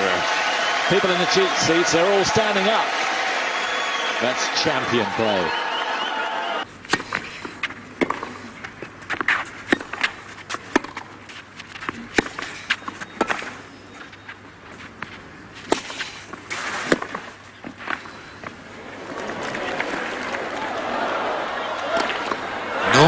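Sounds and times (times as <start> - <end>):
tennis ball bouncing on court: 6.8 - 18.6
tennis ball struck by rackets: 6.8 - 18.6.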